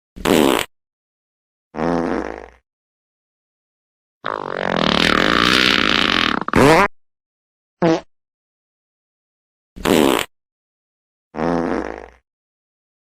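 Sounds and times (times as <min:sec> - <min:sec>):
fart sounds: 0:00.2 - 0:00.7, 0:01.8 - 0:02.6, 0:04.2 - 0:06.9, 0:07.8 - 0:08.1, 0:09.8 - 0:10.3, 0:11.4 - 0:12.3.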